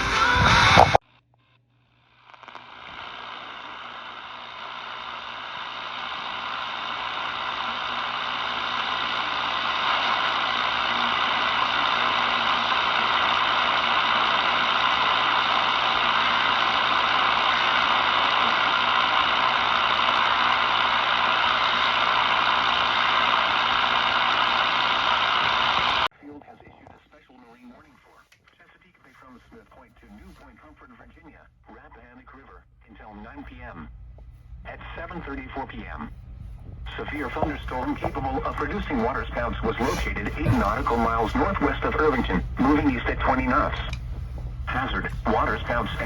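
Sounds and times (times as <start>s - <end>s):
radio static hiss: 0.0s - 1.0s, 2.1s - 46.0s
faint low hum: 26.1s - 46.0s.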